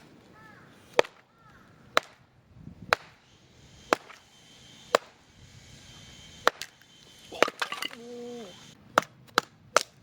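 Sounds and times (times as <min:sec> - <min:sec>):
sharp blows of a hand tool: 0:00.8 - 0:01.3, 0:02.8 - 0:10.0.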